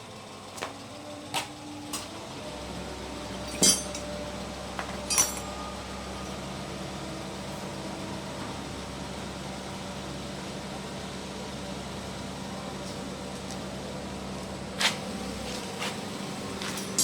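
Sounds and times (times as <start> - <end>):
low machine hum: 0.0 - 17.0
metal tools clinking: 3.4 - 4.1, 4.9 - 5.7, 16.6 - 17.0.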